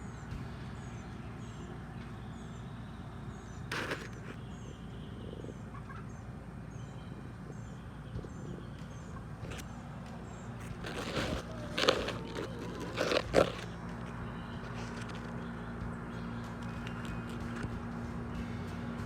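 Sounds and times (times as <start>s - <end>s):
low outdoor background: 0.0s - 19.0s
brief rustle: 3.7s - 4.4s, 10.6s - 13.7s.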